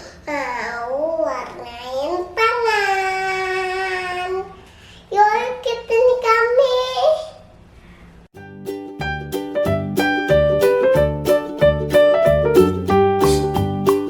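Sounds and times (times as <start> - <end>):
child singing: 0.3 - 7.3.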